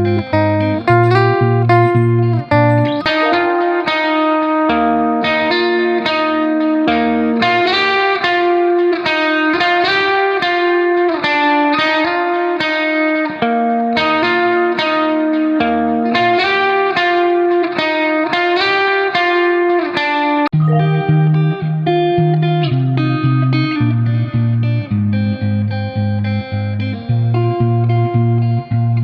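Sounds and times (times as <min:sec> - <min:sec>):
bass line: 0:00.0 - 0:03.8, 0:20.5 - 0:21.8
plucked guitar notes: 0:00.0 - 0:11.1, 0:20.5 - 0:29.0.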